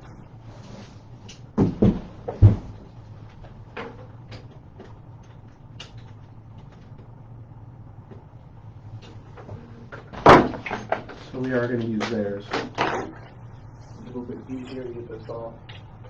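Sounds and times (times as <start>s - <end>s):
loud clunks and knocks: 1.6s - 2.9s, 9.4s - 11.2s.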